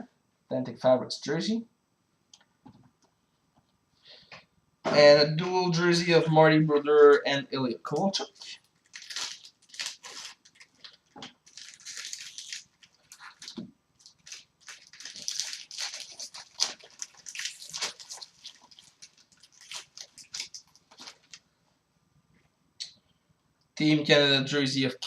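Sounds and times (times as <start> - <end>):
foil wrappers crinkling and tearing: 8.3 - 21.4.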